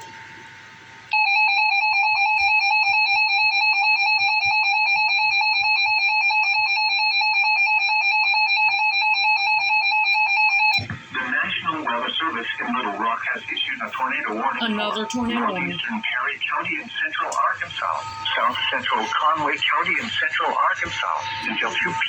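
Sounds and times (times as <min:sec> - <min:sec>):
warbling electronic alert tone: 0:14.6 - 0:15.8.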